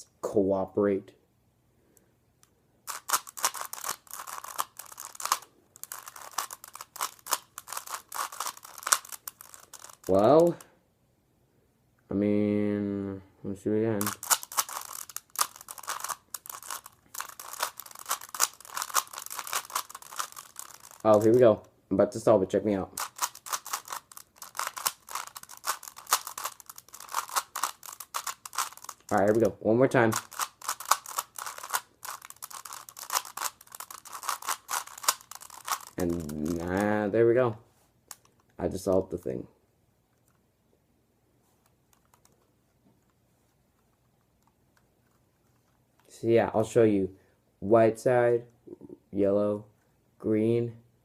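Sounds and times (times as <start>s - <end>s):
puzzle cube clicking turns: 2.4s - 10.6s, 14.0s - 21.7s, 22.9s - 37.0s, 38.0s - 39.2s, 41.6s - 43.2s.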